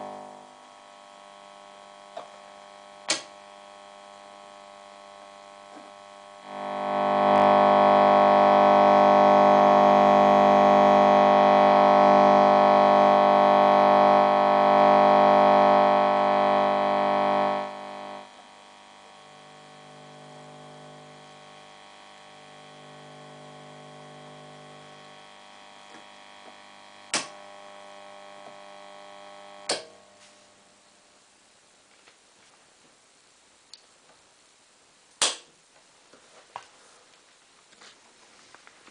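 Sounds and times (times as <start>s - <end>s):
guitar amplifier buzzy hum: 0.0s - 38.9s
sharp clicks: 3.0s - 3.4s, 27.1s - 27.4s.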